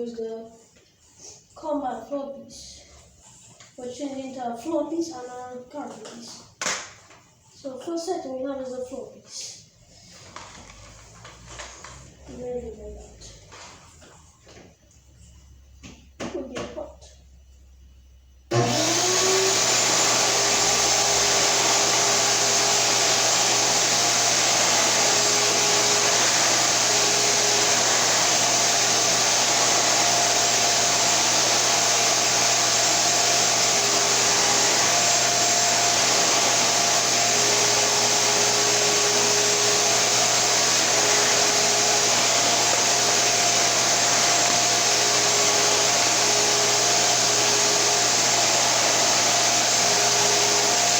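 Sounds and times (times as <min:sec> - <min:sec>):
shop vacuum running: 0:18.5 - 0:50.9.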